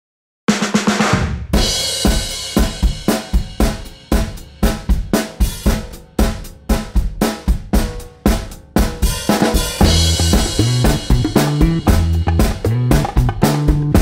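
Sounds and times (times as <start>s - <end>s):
drum fill: 0.5s - 14.0s
upbeat band music: 0.5s - 14.0s
cymbal crash: 9.5s - 12.6s.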